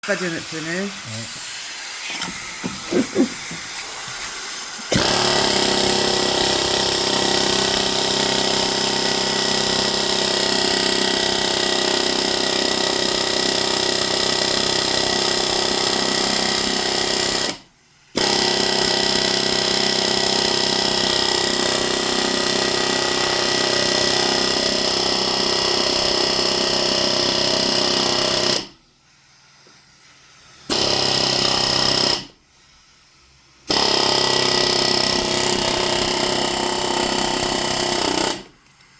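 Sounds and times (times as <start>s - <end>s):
pneumatic air hammer rattling: 1.4s - 17.6s, 30.7s - 32.3s, 33.7s - 38.5s.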